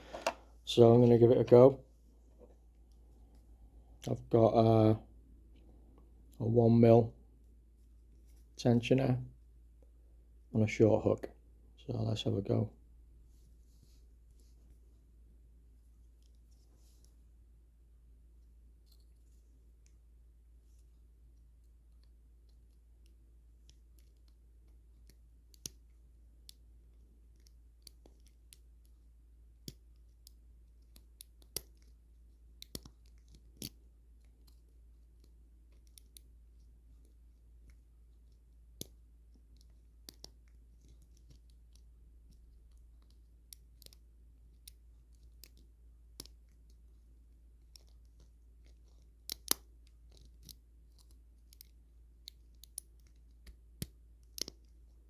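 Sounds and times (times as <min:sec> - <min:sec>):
lock picking metallic clicks: 0:49.3 - 0:54.7.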